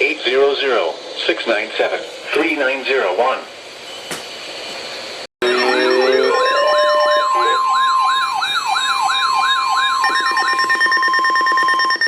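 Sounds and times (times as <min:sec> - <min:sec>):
steady high siren tone: 0:05.4 - 0:12.0
sweeping electronic sirens: 0:05.4 - 0:12.0.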